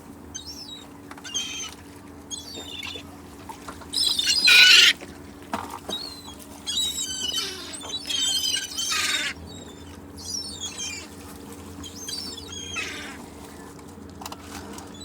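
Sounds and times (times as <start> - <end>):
gulls squawking: 0.3 - 3.1, 3.9 - 5.0, 5.9 - 13.6.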